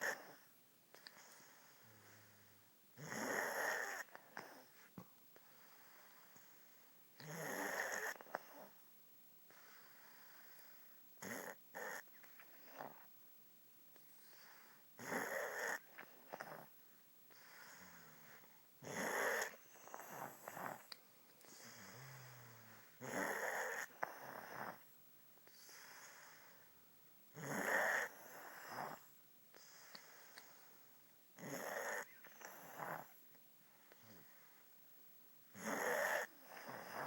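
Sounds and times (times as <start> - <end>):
woman snoring: 3.0 - 4.6, 7.2 - 8.7, 15.0 - 16.7, 17.6 - 20.8, 21.5 - 24.8, 27.4 - 29.0, 31.4 - 33.2, 35.5 - 37.0.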